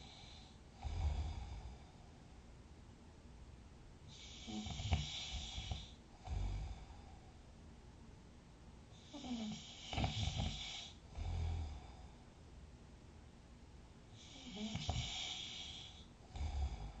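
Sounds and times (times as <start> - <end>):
person snoring: 0.0 - 2.0, 4.1 - 7.1, 9.0 - 12.1, 14.2 - 17.0.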